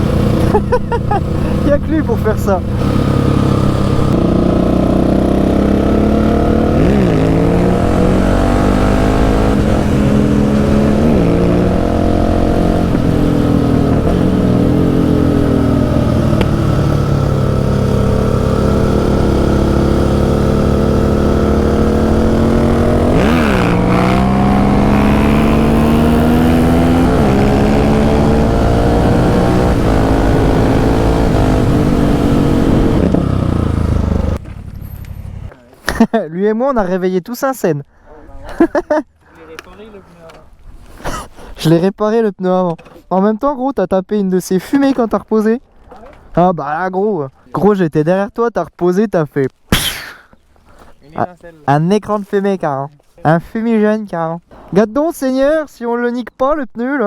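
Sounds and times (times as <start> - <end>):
motorcycle engine accelerating: 0.0 - 35.5
road and wind noise: 0.0 - 35.6.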